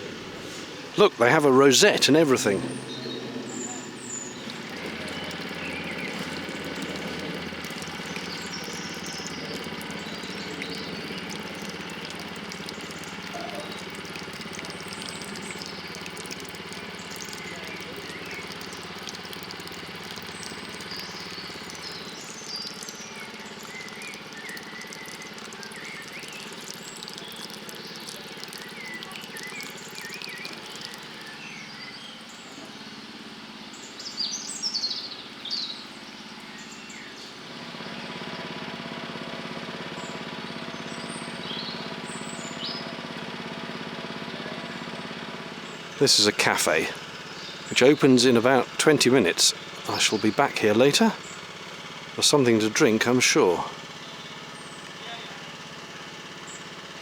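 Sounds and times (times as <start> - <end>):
spring water running from spout: 0.0 - 33.2, 37.4 - 57.0
small birds chirping: 0.0 - 39.2, 39.8 - 57.0.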